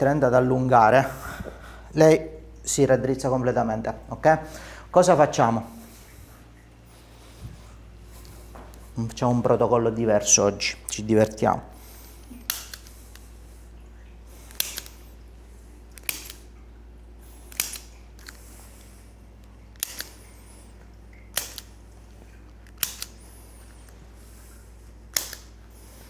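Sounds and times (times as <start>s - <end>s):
spring-loaded instrument clicks: 12.2s - 13.3s, 14.4s - 15.1s, 15.9s - 16.5s, 17.5s - 18.6s, 19.8s - 20.3s, 21.3s - 21.8s, 22.6s - 23.3s, 25.1s - 25.6s.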